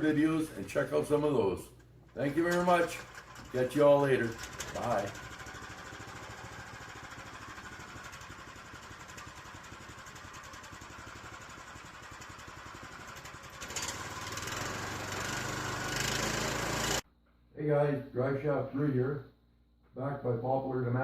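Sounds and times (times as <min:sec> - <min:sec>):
small engine running: 0:02.2 - 0:17.0.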